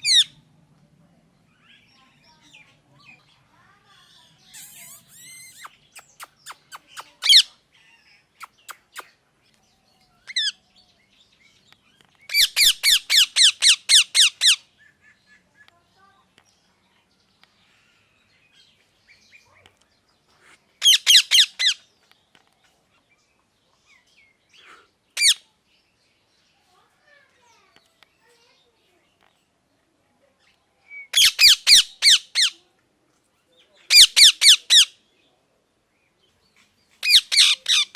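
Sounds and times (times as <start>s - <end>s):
parrot chirping: 0.0s - 0.4s, 4.5s - 9.2s, 10.2s - 10.6s, 12.3s - 15.2s, 20.8s - 21.8s, 25.2s - 25.4s, 30.9s - 32.6s, 33.9s - 34.9s, 37.0s - 37.9s.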